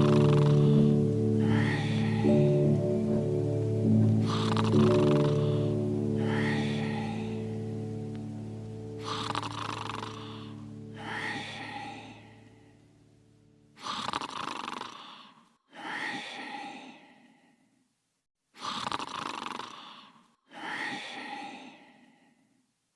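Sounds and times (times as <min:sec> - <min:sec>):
cartoon snoring: 0:00.0 - 0:02.4, 0:04.2 - 0:07.6, 0:09.0 - 0:12.4, 0:13.8 - 0:15.4, 0:18.6 - 0:20.2.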